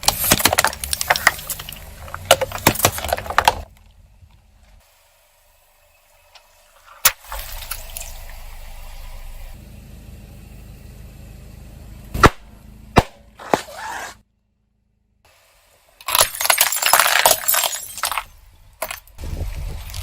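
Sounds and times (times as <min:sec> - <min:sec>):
objects cracking under a tyre: 0:00.0 - 0:04.8, 0:16.0 - 0:20.0
low rumble of car: 0:00.0 - 0:16.0, 0:17.8 - 0:20.0.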